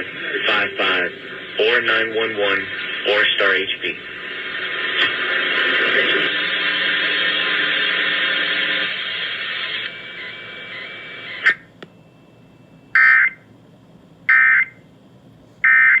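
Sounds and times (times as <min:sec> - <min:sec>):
loud radio hiss: 0:00.0 - 0:11.7.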